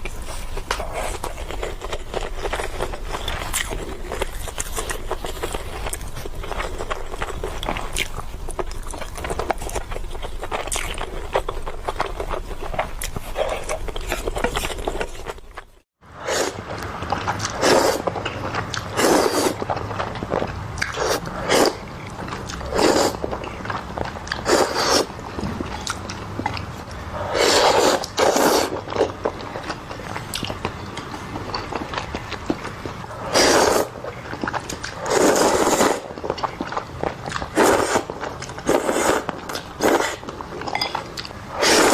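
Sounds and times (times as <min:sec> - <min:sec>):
chewing noodles: 0:00.0 - 0:41.9
loud eating bursts: 0:16.2 - 0:40.6, 0:41.2 - 0:41.9.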